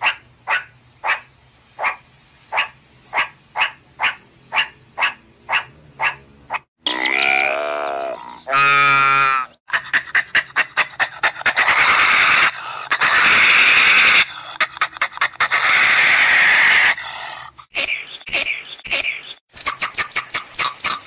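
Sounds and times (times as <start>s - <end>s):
animal panting: 9.7s - 11.8s, 14.3s - 15.7s
long noisy exhalations: 12.4s - 13.1s, 14.1s - 16.0s, 16.8s - 17.7s.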